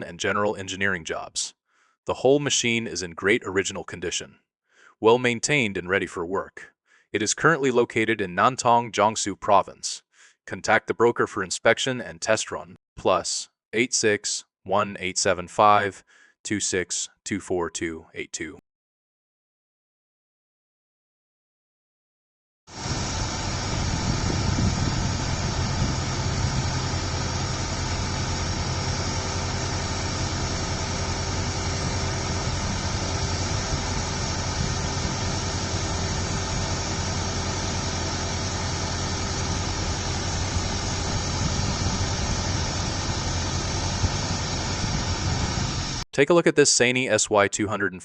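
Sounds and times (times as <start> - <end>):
excavator diesel engine running: 22.8 - 46.0.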